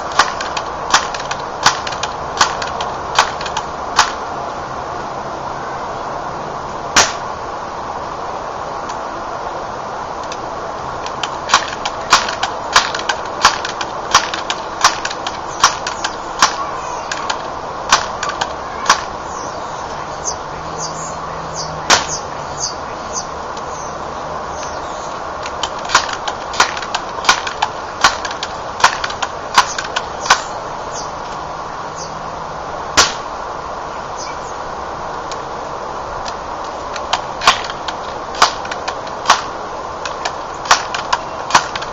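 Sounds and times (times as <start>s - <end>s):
steady background hiss: 0.0s - 41.9s
air rifle shot: 0.1s - 4.2s, 7.0s - 7.3s, 11.5s - 19.1s, 21.9s - 22.2s, 25.6s - 30.6s, 33.0s - 33.3s, 37.1s - 41.9s.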